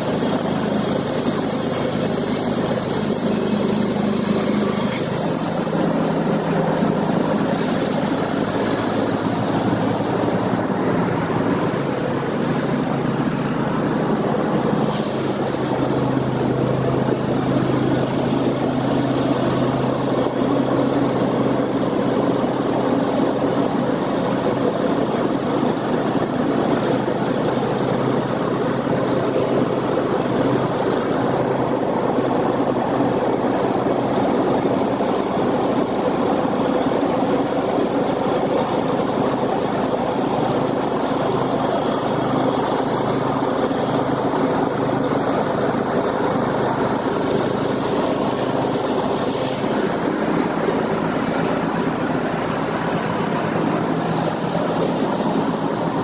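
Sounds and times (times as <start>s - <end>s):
engine running: 0.0s - 56.0s.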